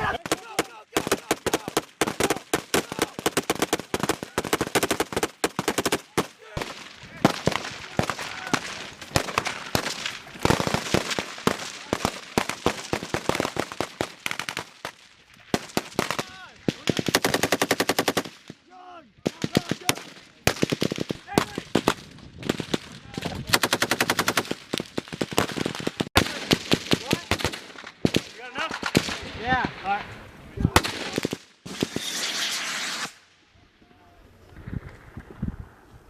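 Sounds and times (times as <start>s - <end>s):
rifles firing rapidly: 0.0s - 18.6s, 19.2s - 29.3s, 30.8s - 31.9s.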